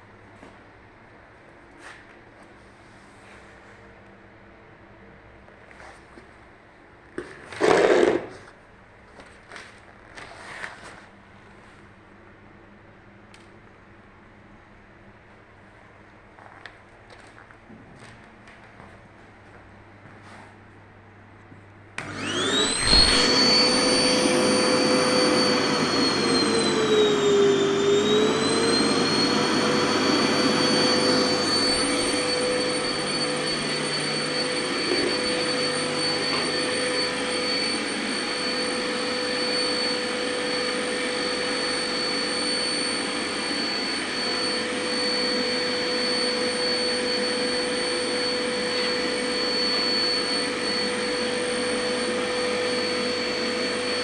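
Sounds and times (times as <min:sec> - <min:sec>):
vacuum cleaner motor whining: 0:22.0 - 0:54.0.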